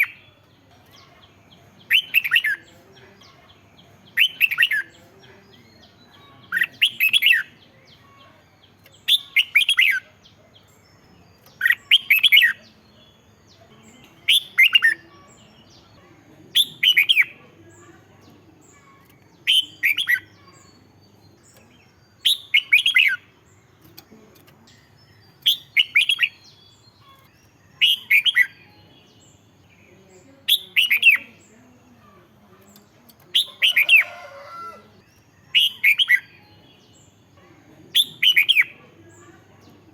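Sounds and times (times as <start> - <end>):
bird singing: 0.0 - 39.9.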